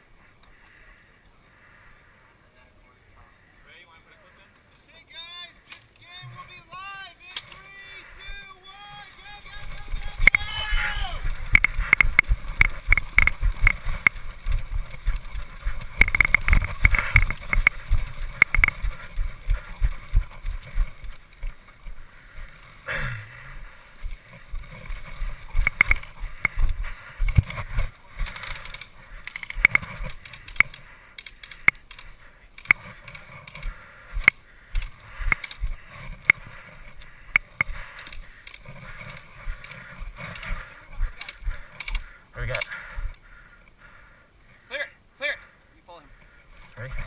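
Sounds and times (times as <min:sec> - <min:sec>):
sharp clicks: 0:07.3 - 0:08.3, 0:08.9 - 0:22.6, 0:24.0 - 0:43.8
footsteps: 0:07.3 - 0:43.2
rattle of carried gear: 0:08.8 - 0:22.7, 0:23.6 - 0:42.8.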